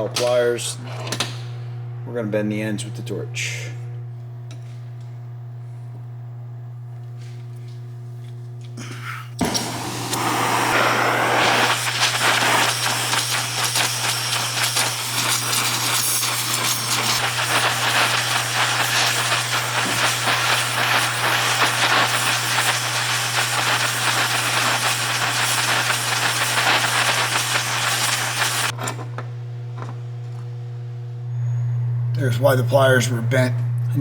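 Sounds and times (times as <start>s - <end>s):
torch flame hissing: 8.8s - 28.8s
torch lighting with a pop: 9.4s - 28.8s.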